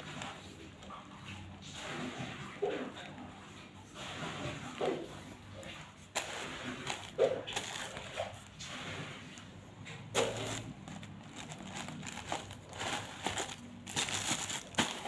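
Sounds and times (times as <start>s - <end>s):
packaging rustling: 6.1s - 8.7s, 10.1s - 15.0s.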